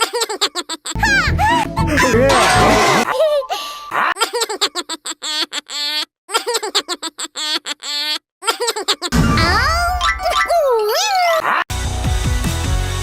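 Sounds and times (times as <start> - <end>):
cartoon characters giggling: 0.0 - 9.2
music: 1.0 - 3.0, 11.7 - 13.0.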